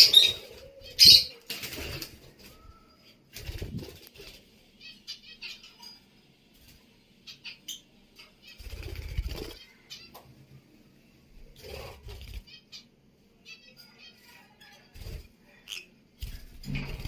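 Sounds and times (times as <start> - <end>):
lovebirds chirping: 0.0 - 10.2.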